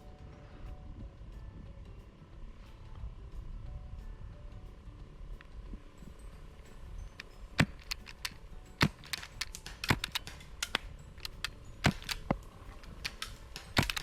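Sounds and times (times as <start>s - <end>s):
faint gun clicks: 7.2s - 14.0s
airsoft gun snaps: 7.6s - 14.0s.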